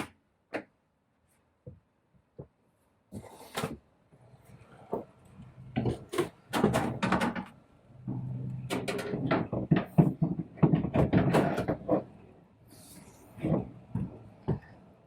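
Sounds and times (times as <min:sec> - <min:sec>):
objects knocking and clattering: 0:05.7 - 0:12.2, 0:13.4 - 0:14.8.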